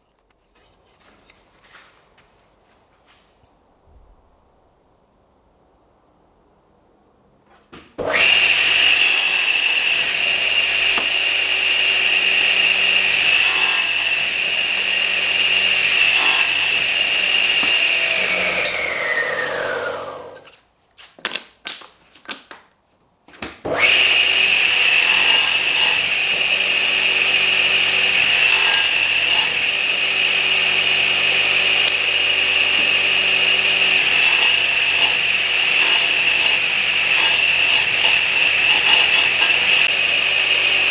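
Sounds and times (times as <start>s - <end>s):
power tool high whine: 8.1s - 20.5s, 23.7s - 40.9s.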